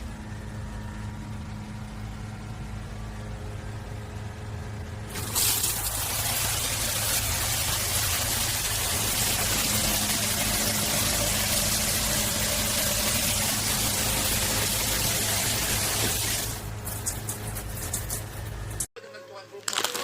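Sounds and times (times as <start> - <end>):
low steady hum: 0.0 - 19.6
water running hard: 5.1 - 18.2.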